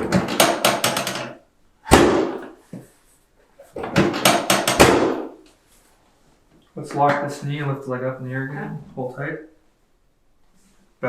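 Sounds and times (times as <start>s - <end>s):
sharp knocking: 4.0s - 5.4s.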